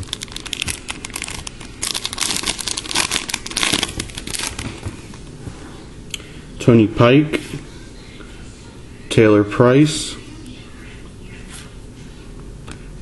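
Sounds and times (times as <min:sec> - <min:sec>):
plastic wrapper crinkling: 0:00.0 - 0:04.9.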